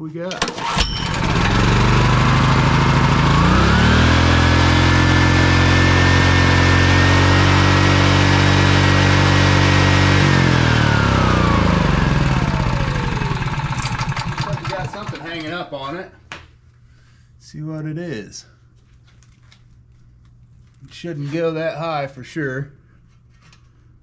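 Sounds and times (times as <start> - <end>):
generator engine running: 0.4 - 15.6.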